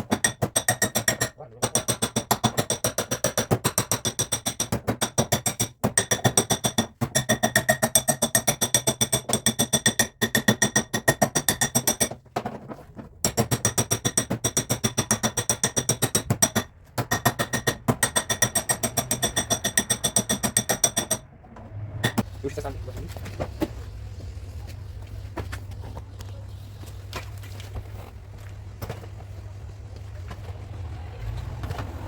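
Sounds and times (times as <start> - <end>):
hammer tapping sheet metal: 0.0 - 12.2, 13.2 - 21.3, 22.0 - 22.3.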